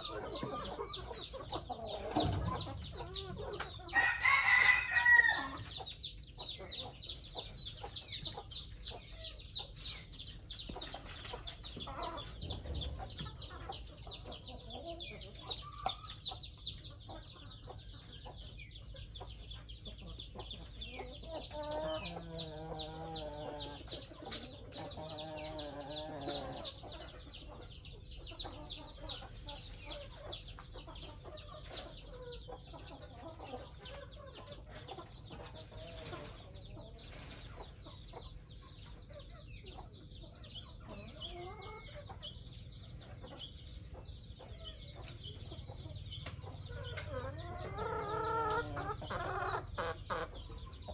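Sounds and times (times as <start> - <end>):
chickens chirping: 0.0 - 50.9.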